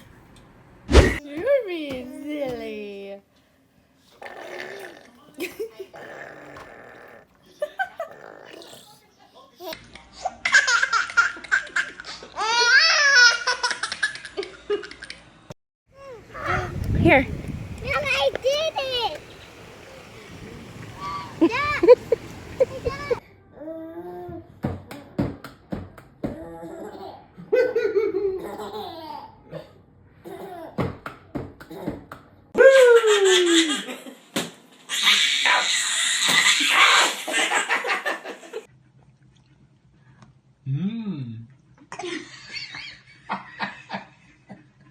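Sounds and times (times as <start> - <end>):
high-pitched laughter: 21.0 - 23.2, 35.0 - 38.7.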